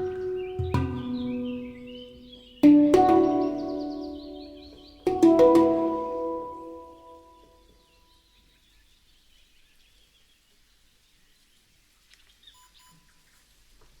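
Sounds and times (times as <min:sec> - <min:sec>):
handpan note ringing: 0:00.0 - 0:07.4
faint birdsong chirps: 0:00.0 - 0:13.6.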